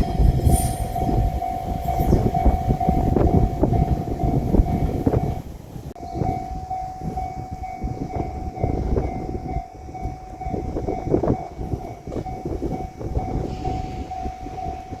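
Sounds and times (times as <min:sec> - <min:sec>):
level crossing warning bell: 0:00.0 - 0:15.0
train wheels clattering on rails: 0:06.2 - 0:15.0.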